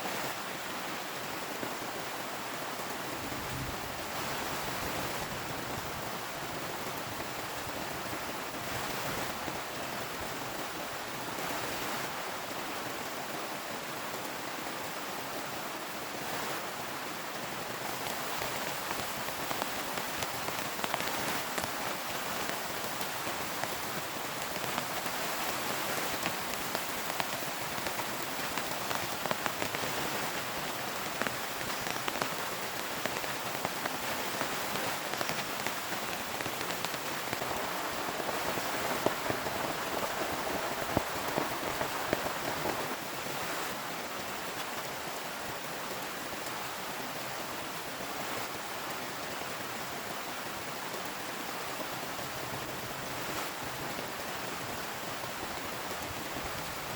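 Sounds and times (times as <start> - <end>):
heavy rain falling: 0.1 - 56.9
raindrops ticking on a surface: 15.9 - 56.9.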